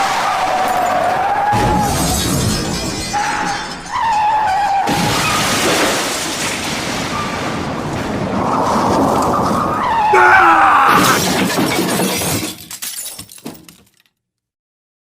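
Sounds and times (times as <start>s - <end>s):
glass shattering: 0.1s - 7.6s, 10.9s - 14.1s
debris clinking: 0.1s - 8.3s, 11.0s - 14.2s
falling screeching tones: 9.5s - 11.2s.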